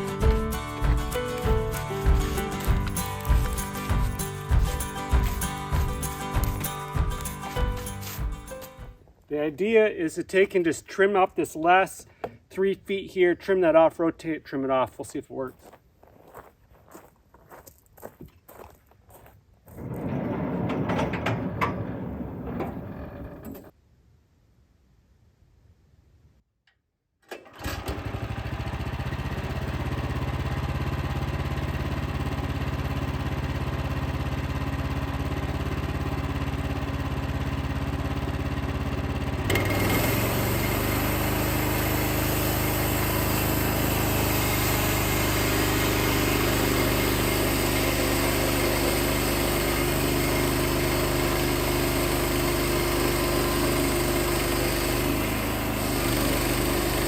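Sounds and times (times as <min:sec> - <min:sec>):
sawmill engine running: 0:00.0 - 0:09.0, 0:19.8 - 0:23.7, 0:27.6 - 0:57.0.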